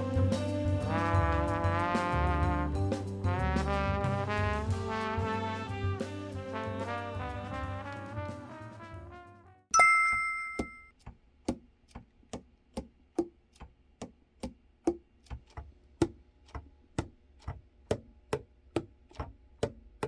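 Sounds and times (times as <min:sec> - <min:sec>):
backing track with bass and drums: 0:00.0 - 0:09.1.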